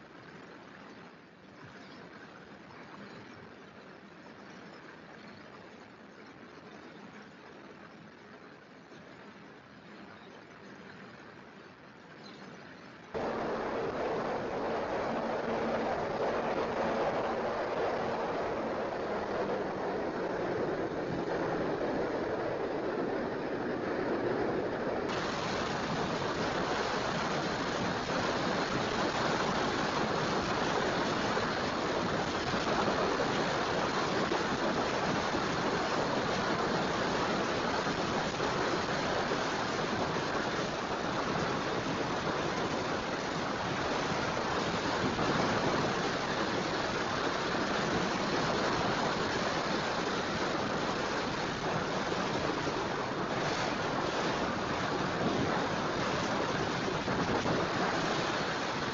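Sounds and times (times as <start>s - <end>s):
ocean surf washing on beach: 13.1s - 58.9s.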